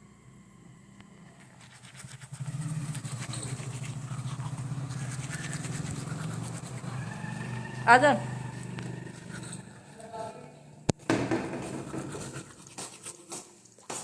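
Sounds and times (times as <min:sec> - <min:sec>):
engine running steadily: 0:02.2 - 0:09.9.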